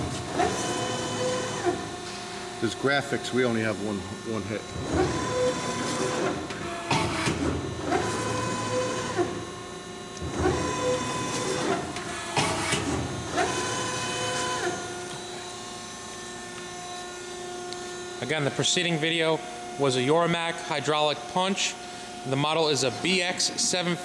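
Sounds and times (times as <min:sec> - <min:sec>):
hydraulic unit hum: 0:00.0 - 0:24.0
sharp mechanical clunks: 0:10.2 - 0:13.5.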